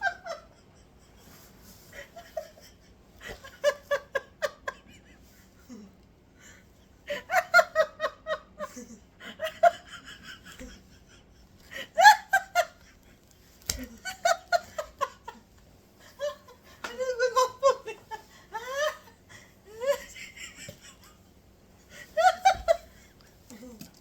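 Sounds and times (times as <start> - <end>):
person laughing hard: 7.1 - 21.2, 21.9 - 23.8.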